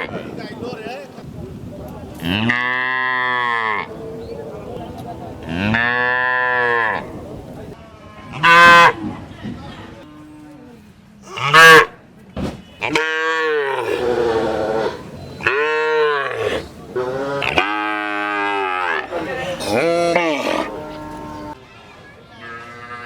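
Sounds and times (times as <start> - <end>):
cattle mooing: 12.8 - 21.6.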